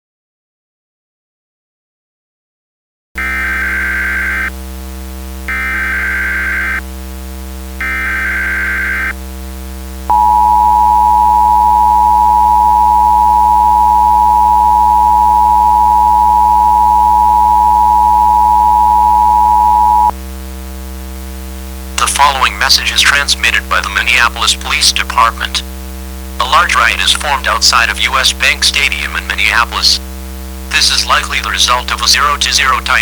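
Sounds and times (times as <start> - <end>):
data header bursts: 3.2 - 6.9, 7.6 - 9.2, 10.1 - 20.1, 30.6 - 33.0
constant low hum: 3.2 - 33.0
two-tone attention signal: 10.1 - 20.1.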